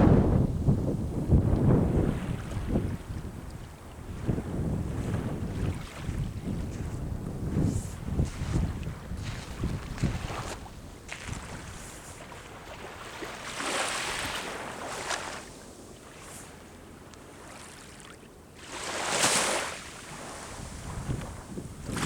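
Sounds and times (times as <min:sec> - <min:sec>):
wind rumble on microphone: 0:00.0 - 0:14.6, 0:20.0 - 0:22.0
sea waves breaking on shore: 0:00.0 - 0:22.0.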